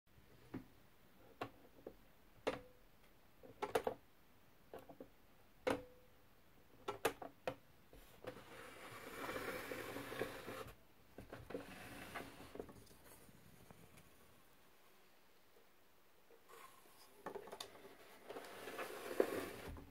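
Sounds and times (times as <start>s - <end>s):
scraping rustle: 16.5s - 19.9s.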